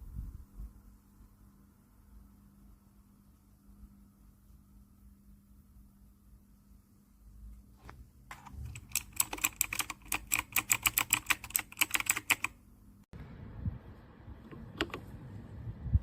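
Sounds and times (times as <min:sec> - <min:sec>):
mechanical keyboard typing: 0:08.3 - 0:12.6.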